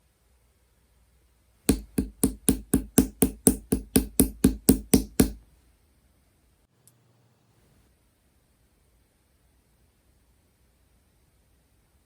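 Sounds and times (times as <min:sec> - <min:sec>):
sharp taps: 0:01.7 - 0:05.4.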